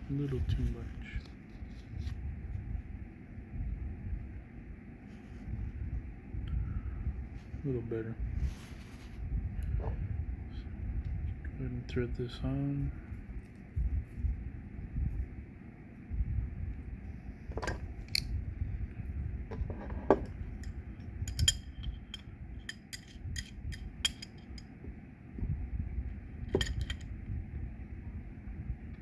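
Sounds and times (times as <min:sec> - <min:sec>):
low handling rumble: 0:05.4 - 0:29.0
light metallic clicks and clinks: 0:20.2 - 0:24.7, 0:26.5 - 0:27.1.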